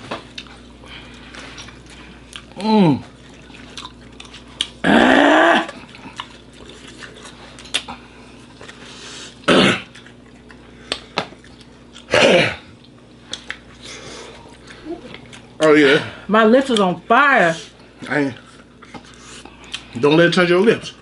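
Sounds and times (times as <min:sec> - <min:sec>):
person coughing: 0:09.5 - 0:09.9, 0:12.1 - 0:12.7.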